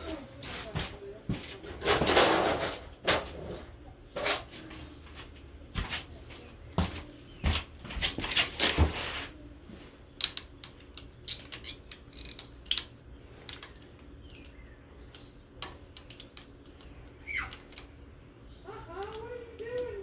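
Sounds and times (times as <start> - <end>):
metal engine parts clinking: 10.2 - 14.5.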